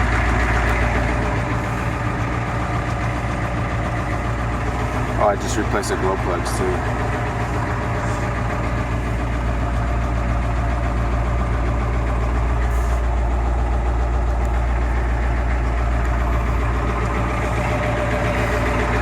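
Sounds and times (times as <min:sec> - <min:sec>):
diesel engine idling: 0:00.0 - 0:19.0.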